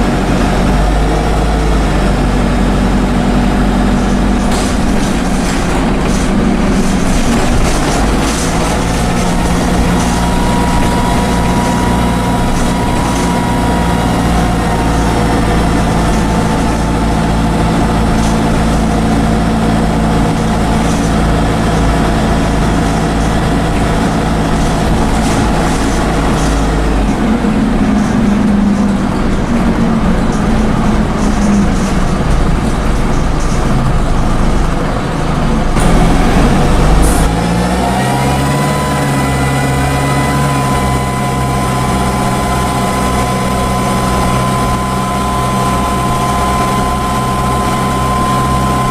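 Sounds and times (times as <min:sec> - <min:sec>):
bus diesel engine running: 0:00.0 - 0:48.9
turbocharger whine: 0:00.0 - 0:48.9
rattles on board: 0:03.6 - 0:34.8.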